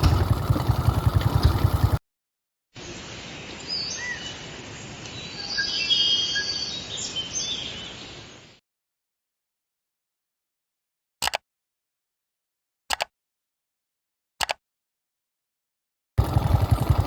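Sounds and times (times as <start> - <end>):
small engine idling: 0.0 - 2.0, 16.2 - 17.0
birds chirping and whistling: 3.7 - 4.5, 5.1 - 8.2.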